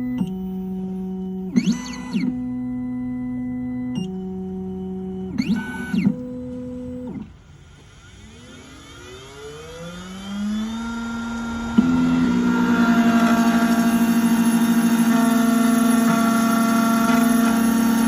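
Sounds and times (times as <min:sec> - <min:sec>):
key-cutting machine motors whining: 0:00.0 - 0:18.0.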